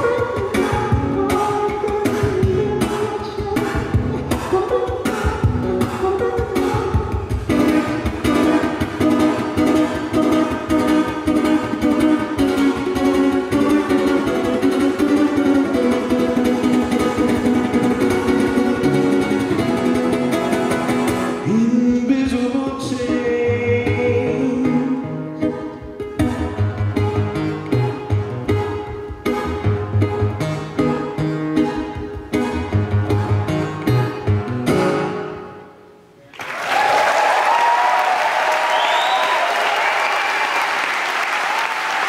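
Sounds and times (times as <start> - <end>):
acoustic guitar strumming: 0.0 - 36.1.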